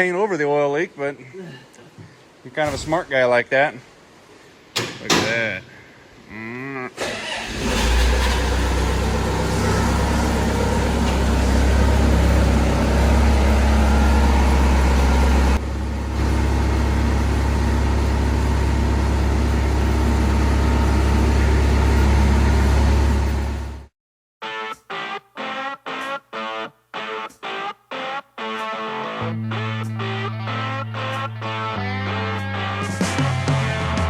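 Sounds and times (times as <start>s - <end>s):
skid steer engine rumbling: 7.5s - 23.8s.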